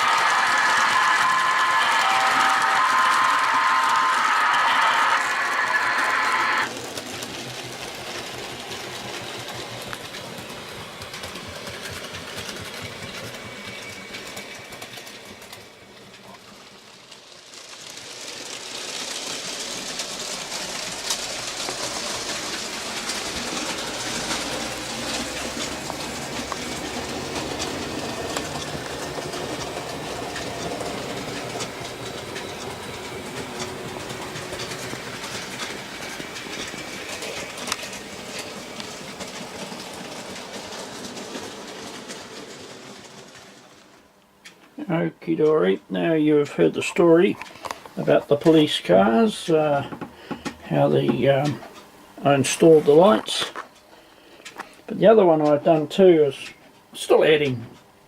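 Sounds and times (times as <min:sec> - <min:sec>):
model train motor whirring: 0:00.0 - 0:43.9
wheels clicking over rail joints: 0:00.0 - 0:58.0.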